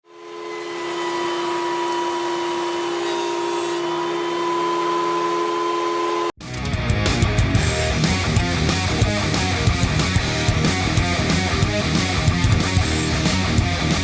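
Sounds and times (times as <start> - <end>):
music: 6.4 - 14.0.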